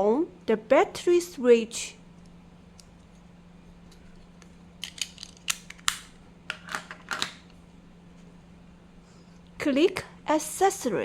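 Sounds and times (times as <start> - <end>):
faint steady hum: 0.0 - 11.0
small sharp clicks and snaps: 3.9 - 6.2.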